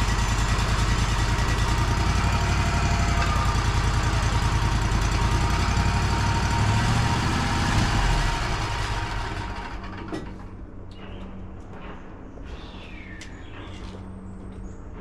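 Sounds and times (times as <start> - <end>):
sawmill engine running: 0.0 - 10.6.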